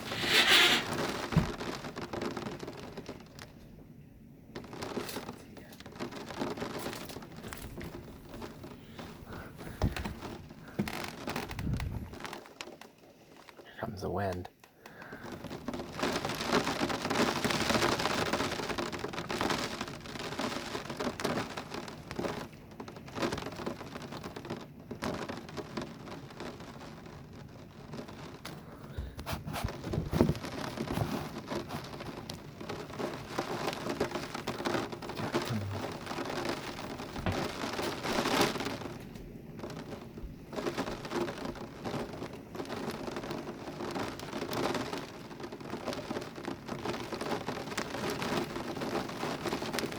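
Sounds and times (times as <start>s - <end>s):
heavy rain pouring: 0.0s - 3.6s, 4.6s - 49.9s
gusting wind: 0.0s - 12.6s, 23.8s - 49.9s
deep thunder rumbles: 33.8s - 42.3s.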